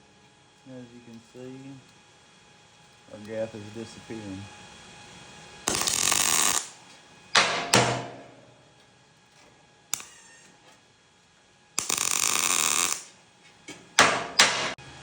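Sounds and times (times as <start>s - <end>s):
arc welder crackling hiss: 0.0s - 15.0s
hammer blows ringing on steel: 7.4s - 8.4s, 14.0s - 14.8s.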